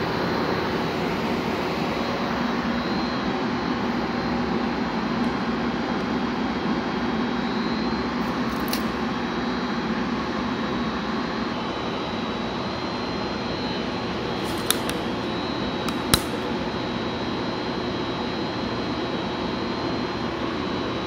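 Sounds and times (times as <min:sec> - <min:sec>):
sharp clicks: 0:14.4 - 0:15.1, 0:15.9 - 0:16.5.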